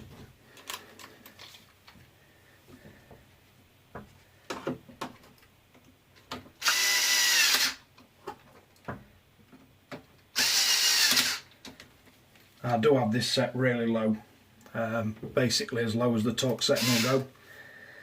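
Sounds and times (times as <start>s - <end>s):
cordless screwdriver running: 6.6s - 7.8s, 10.4s - 11.5s, 16.8s - 17.2s.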